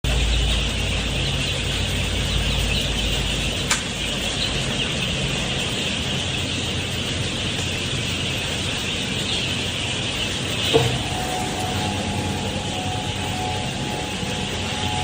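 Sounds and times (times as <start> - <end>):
chicks peeping: 0.0 - 15.0
ventilation fans humming: 0.0 - 15.0.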